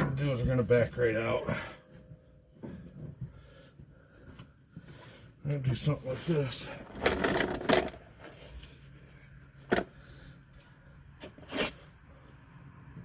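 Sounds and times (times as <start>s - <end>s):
short scrapes: 11.2s - 11.9s.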